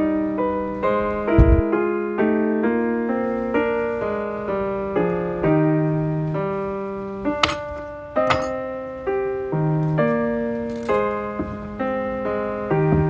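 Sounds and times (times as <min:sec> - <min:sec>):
slow piano music: 0:00.0 - 0:13.0
low thump: 0:01.3 - 0:01.7.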